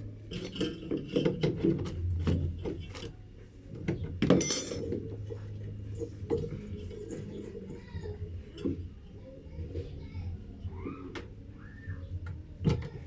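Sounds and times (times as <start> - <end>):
metallic clinks of tools: 4.3 - 4.9.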